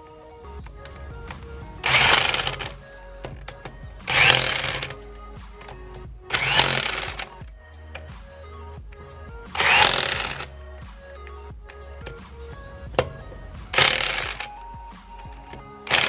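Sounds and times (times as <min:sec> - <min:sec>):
background music: 0:00.0 - 0:16.0
impact driver whining: 0:00.6 - 0:08.1, 0:08.9 - 0:10.5, 0:12.9 - 0:16.0.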